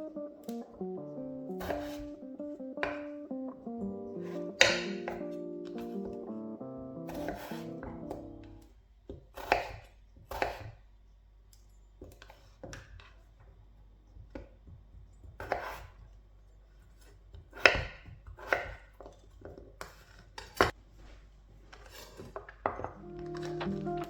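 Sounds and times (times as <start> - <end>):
knife chopping on cutting board: 1.6 - 2.2, 4.2 - 6.1, 7.1 - 8.3, 9.1 - 10.8, 14.2 - 16.1, 17.0 - 20.8.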